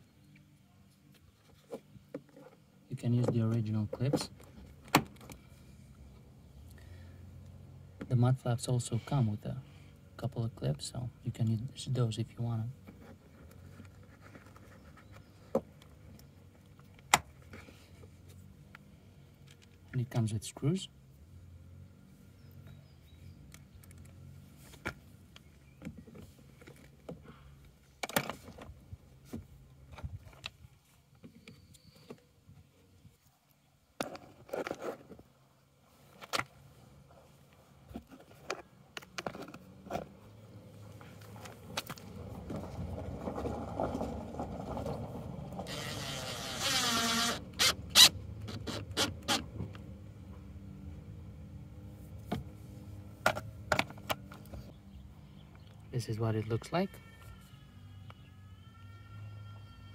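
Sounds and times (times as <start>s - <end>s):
cordless drill driving a screw: 45.7s - 49.4s.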